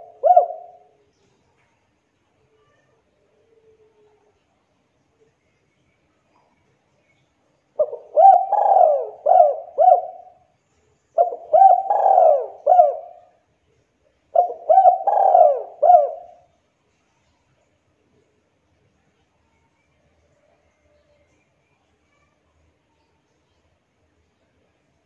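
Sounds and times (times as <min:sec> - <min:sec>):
dove cooing: 0:00.0 - 0:00.9, 0:07.8 - 0:10.4, 0:11.2 - 0:13.3, 0:14.3 - 0:16.5.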